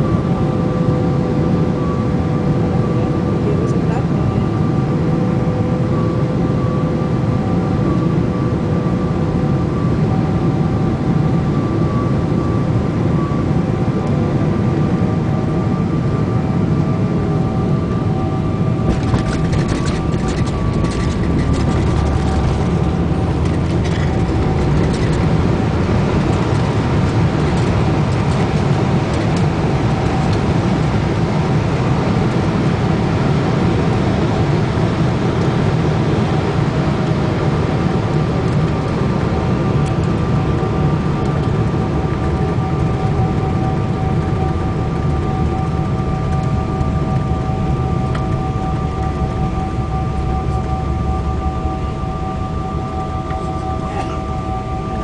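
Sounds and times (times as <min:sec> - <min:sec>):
jet engines and airflow rush: 0:00.0 - 0:55.0
faint whining tones: 0:09.1 - 0:31.3, 0:39.4 - 0:55.0
clicks and rattles: 0:18.9 - 0:22.7.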